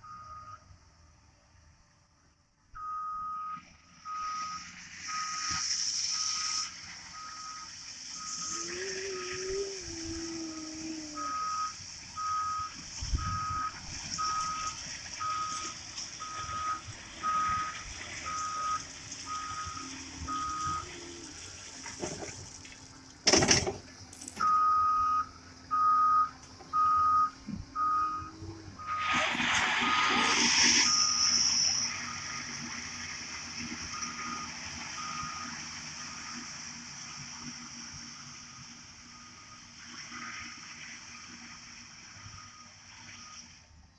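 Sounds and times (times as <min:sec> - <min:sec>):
reversing alarm beeping: 0:00.0 - 0:00.7, 0:02.8 - 0:21.2, 0:24.4 - 0:32.6, 0:33.8 - 0:36.5
diesel engine running: 0:00.0 - 0:43.9
loud hissing rush: 0:08.3 - 0:11.4.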